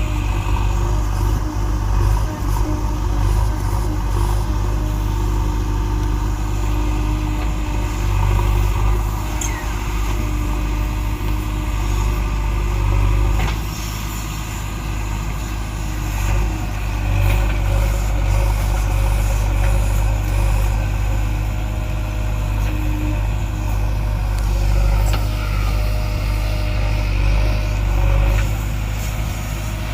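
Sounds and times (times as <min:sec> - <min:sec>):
diesel engine running: 0:00.0 - 0:29.9
short squeaks and clicks: 0:09.3 - 0:09.8.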